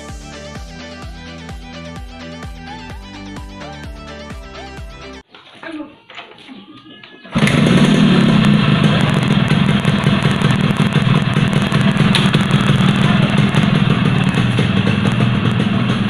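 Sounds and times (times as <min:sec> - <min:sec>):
motorcycle engine running: 0:07.3 - 0:16.0.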